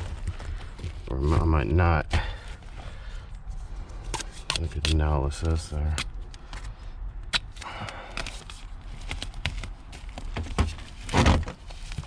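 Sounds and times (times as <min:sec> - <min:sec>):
hands handling tape: 0:04.0 - 0:12.0.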